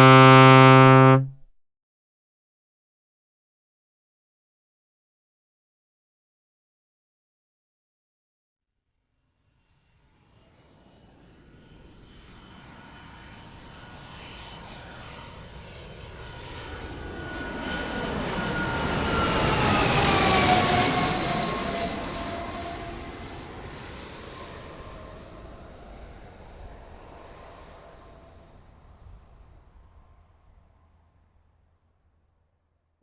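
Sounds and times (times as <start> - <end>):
airplane flying over: 0.0 - 1.3, 11.6 - 29.4.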